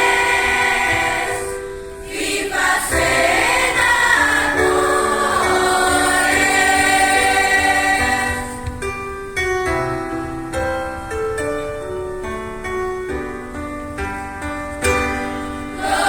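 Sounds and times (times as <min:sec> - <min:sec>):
choir singing: 0:00.0 - 0:08.8, 0:15.7 - 0:16.0
keyboard playing: 0:00.0 - 0:16.0.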